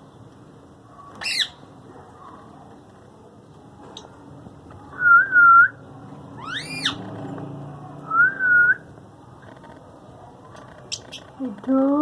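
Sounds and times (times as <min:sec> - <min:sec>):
parakeet wavy whistles: 0:01.2 - 0:01.6, 0:06.4 - 0:07.0.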